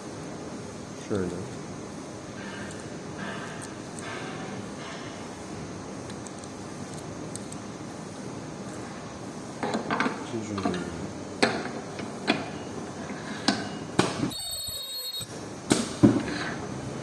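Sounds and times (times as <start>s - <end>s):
welding machine high-pitched whine: 14.2s - 15.4s.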